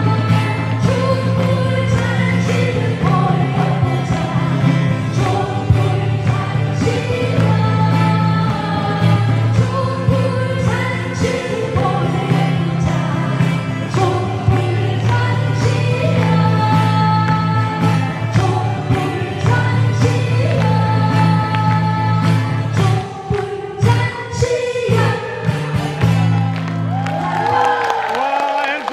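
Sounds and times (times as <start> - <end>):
bass line: 0.0 - 23.1
woman singing: 0.0 - 26.0.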